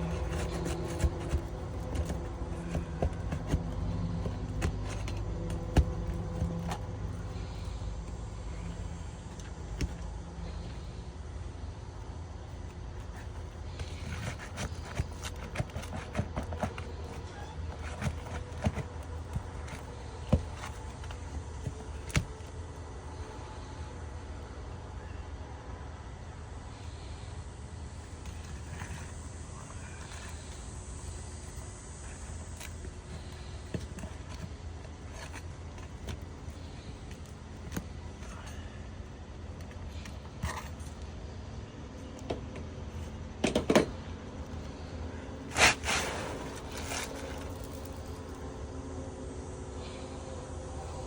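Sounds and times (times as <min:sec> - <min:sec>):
hand tools clicking on shingles: 0:00.0 - 0:07.1
hand tools prying roof shingles: 0:00.0 - 0:07.7, 0:13.0 - 0:22.5, 0:45.5 - 0:48.0.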